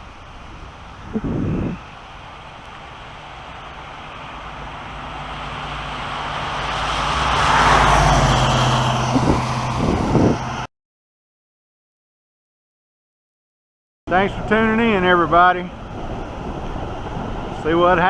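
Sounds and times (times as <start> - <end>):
vehicle passing: 0.1 - 10.7.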